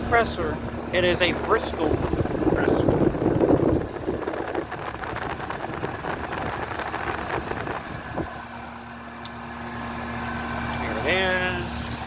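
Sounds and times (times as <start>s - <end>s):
air conditioner compressor hum: 0.0s - 12.0s
condenser fan rushing: 0.0s - 12.0s
wind buffeting microphone: 1.2s - 8.5s.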